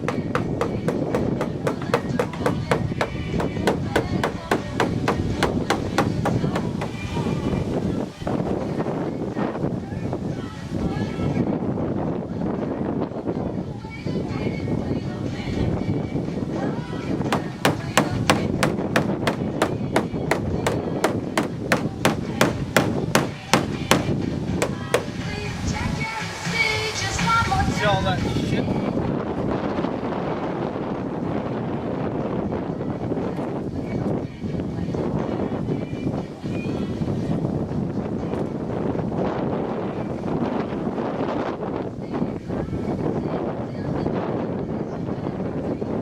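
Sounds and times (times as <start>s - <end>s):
rapid sharp knocking: 0.0s - 7.1s, 17.3s - 25.3s.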